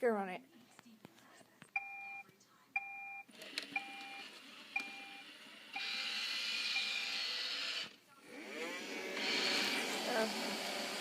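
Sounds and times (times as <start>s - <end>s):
robot vacuum beeps: 2.8s - 7.8s
vacuum motor whirring: 3.3s - 11.0s.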